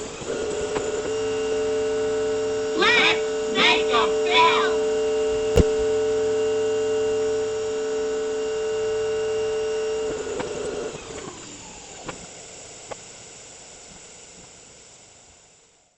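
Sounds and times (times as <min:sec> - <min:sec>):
electrical hum: 0:00.6 - 0:09.9
sharp click: 0:05.5 - 0:05.9.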